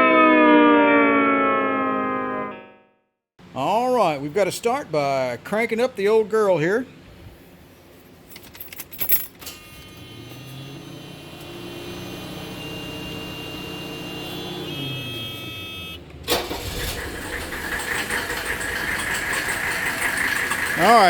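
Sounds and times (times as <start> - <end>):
car keys jangling: 8.3 - 9.4
diesel engine starting: 9.4 - 21.0
starter motor whirring: 9.5 - 21.0.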